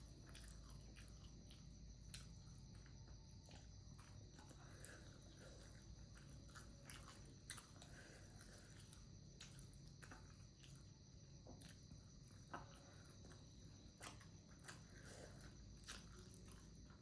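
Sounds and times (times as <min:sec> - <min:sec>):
chewing and biting food: 0:00.0 - 0:17.0.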